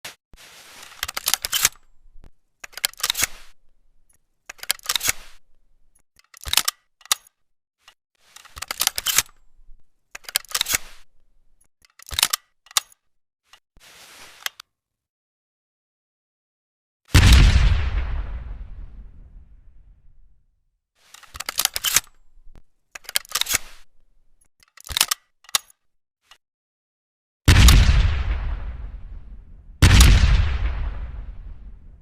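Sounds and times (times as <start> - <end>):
shotgun action clicks: 1.0 - 3.6, 6.2 - 7.4, 8.4 - 11.3, 11.9 - 13.0, 21.1 - 25.8.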